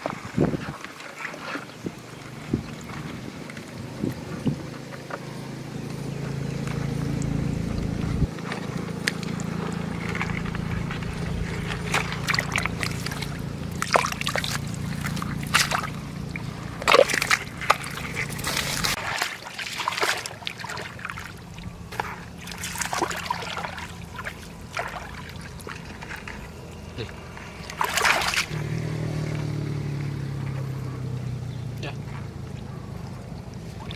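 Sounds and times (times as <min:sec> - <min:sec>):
water sloshing and splashing: 0:00.0 - 0:33.9
steady low hum: 0:02.4 - 0:19.1.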